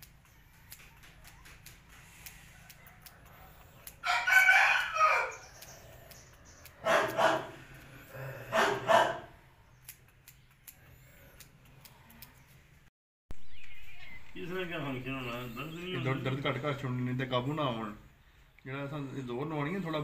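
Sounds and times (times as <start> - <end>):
rooster crowing: 4.0 - 5.5.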